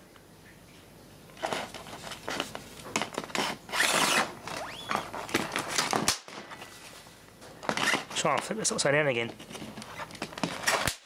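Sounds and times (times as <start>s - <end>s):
short rising squeak: 3.8s - 5.1s.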